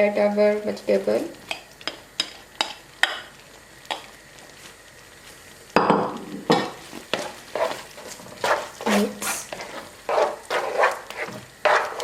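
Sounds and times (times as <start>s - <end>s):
scraping and stirring in pan: 1.4s - 4.8s, 6.2s - 12.0s.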